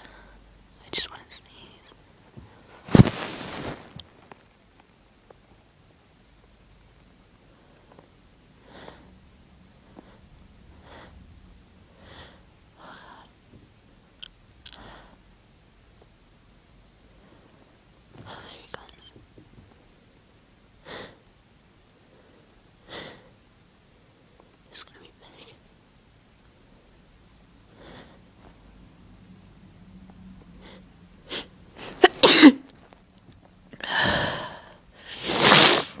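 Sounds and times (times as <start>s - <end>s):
person sniffing and catching breath: 2.8s - 4.0s, 33.8s - 36.0s
person sneezing: 31.4s - 32.8s, 35.1s - 36.0s.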